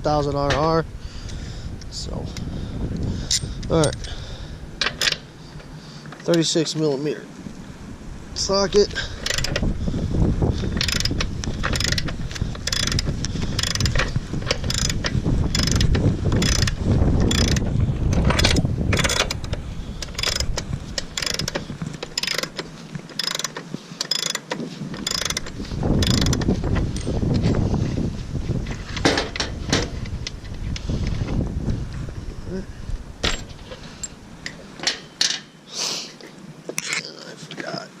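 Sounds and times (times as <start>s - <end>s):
hand ratchet clicking: 9.0s - 9.7s, 10.7s - 27.4s.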